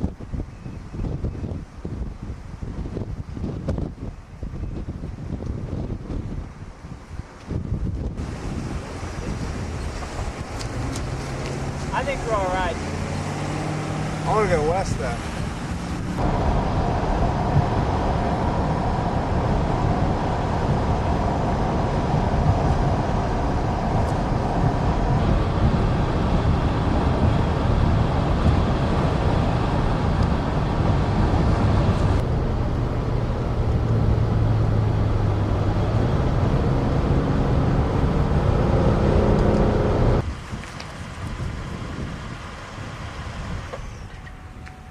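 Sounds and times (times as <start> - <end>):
car road noise with hiss: 0.0 - 44.9
low engine hum: 0.0 - 44.9.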